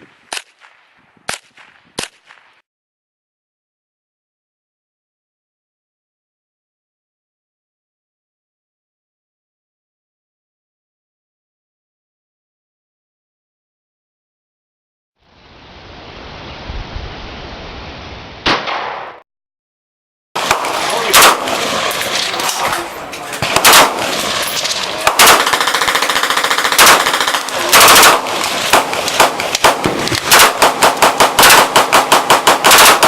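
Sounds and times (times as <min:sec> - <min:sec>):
gunshots: 0:18.4 - 0:19.2, 0:20.4 - 0:33.0.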